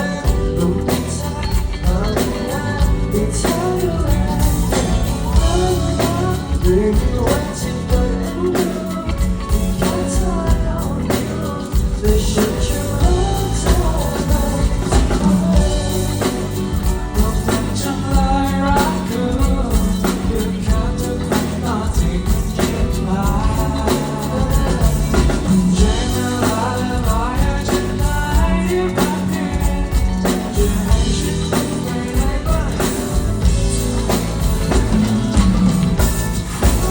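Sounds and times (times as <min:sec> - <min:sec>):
man singing live: 0:00.0 - 0:36.9
pop backing track with drums: 0:00.0 - 0:36.9.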